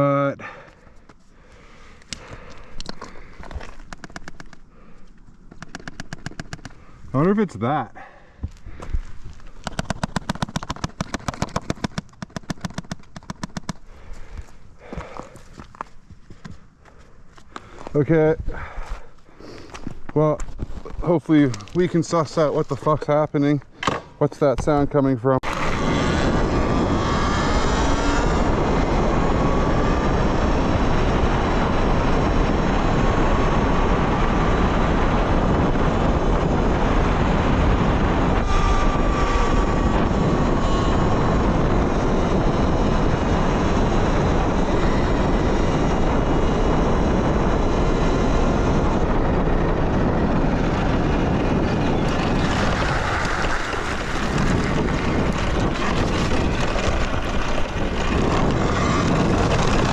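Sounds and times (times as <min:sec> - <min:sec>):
wind and riding noise: 0:00.0 - 0:59.9
electric motor whine: 0:25.4 - 0:59.9.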